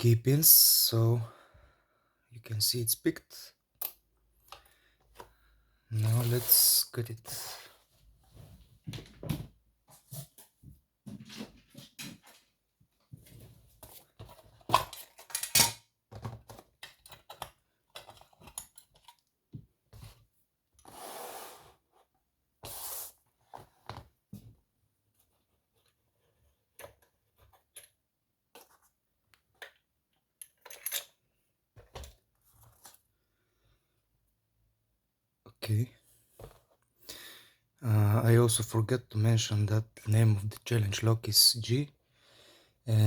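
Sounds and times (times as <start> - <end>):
metal lock parts clinking: 14.7 - 15.8, 30.4 - 31.2.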